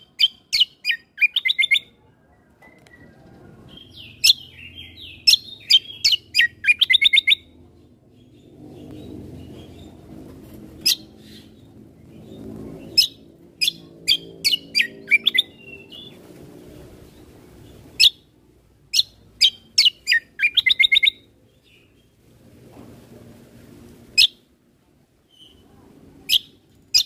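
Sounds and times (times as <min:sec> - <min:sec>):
bird whistled chirps and trill: 0:00.1 - 0:07.6, 0:12.9 - 0:16.2, 0:18.9 - 0:21.9, 0:24.2 - 0:24.4.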